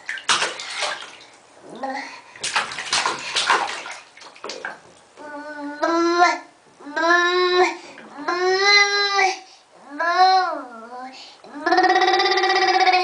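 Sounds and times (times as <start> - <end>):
child making gurgling mouth noises: 5.2 - 13.0.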